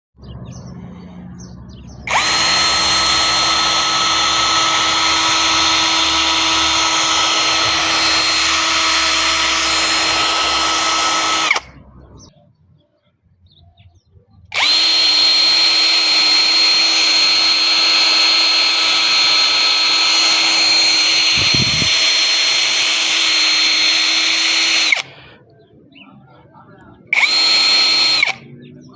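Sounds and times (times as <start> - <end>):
electric drill whining: 2.1 - 11.8, 14.5 - 25.3, 27.1 - 28.4.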